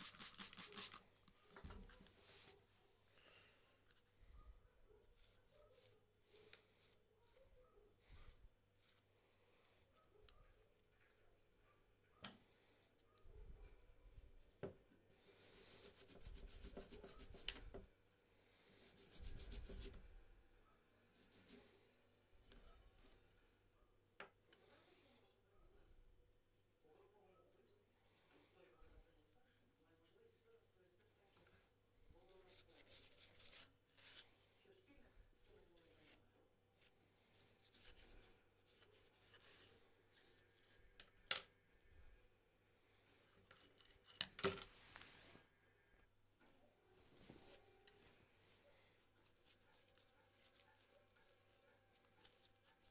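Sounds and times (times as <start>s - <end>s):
faint scratchy rubbing and scraping: 12.5s - 20.3s, 28.2s - 41.1s, 42.9s - 45.8s, 46.9s - 52.9s.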